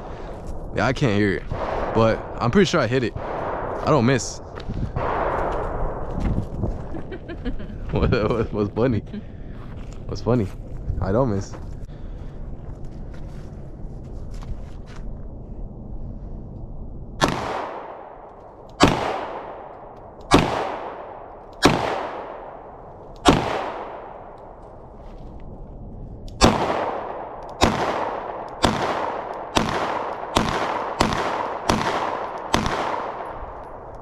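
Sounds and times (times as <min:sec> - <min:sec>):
pistol shots with echo: 0:17.2 - 0:24.4, 0:26.4 - 0:33.9.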